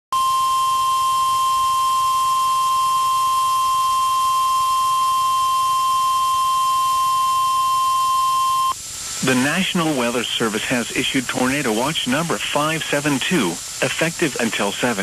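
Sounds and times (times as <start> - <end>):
loud steady alarm tone: 0.2 - 10.2.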